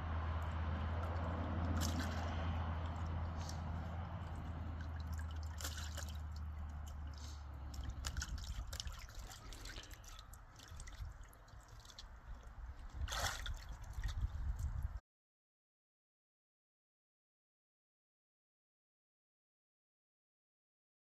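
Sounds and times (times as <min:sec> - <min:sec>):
low hum: 0:00.0 - 0:13.1
water splashing: 0:00.3 - 0:14.9
water dripping and sloshing: 0:00.3 - 0:15.0.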